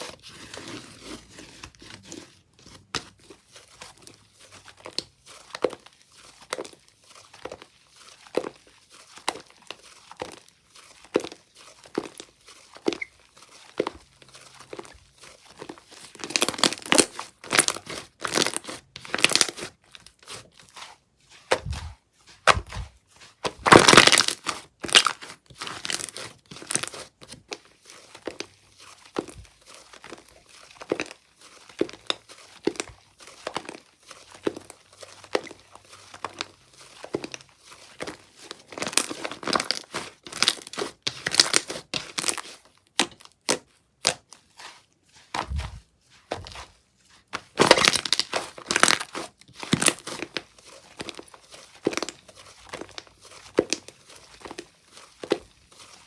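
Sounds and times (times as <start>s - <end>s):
slime crackling and popping: 16.2s - 19.7s, 21.5s - 27.0s, 47.4s - 54.6s.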